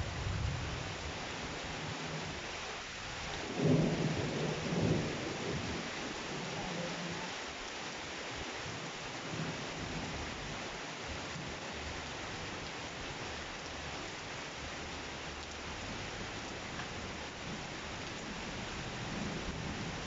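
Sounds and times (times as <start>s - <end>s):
low thunder rumble: 0.0s - 1.2s, 3.4s - 7.0s
heavy rain hissing: 0.0s - 20.0s.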